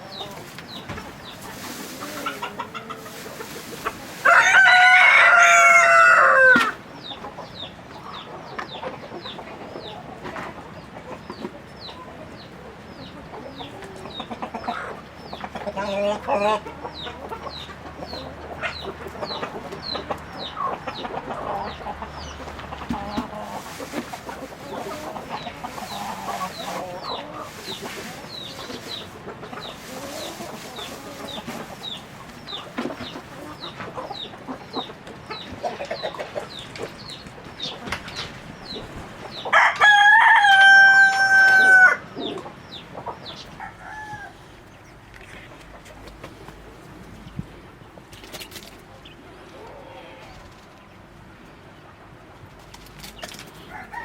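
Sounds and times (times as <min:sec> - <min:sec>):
chickens clucking: 0:00.0 - 0:54.0
rooster crowing: 0:04.2 - 0:06.8, 0:39.5 - 0:42.0, 0:43.6 - 0:44.4, 0:53.7 - 0:54.0.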